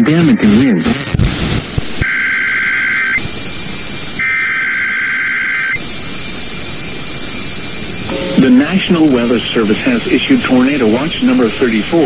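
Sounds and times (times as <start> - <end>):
radio static hiss: 0.0 - 12.0
buzzing two-tone data bursts: 2.0 - 10.0.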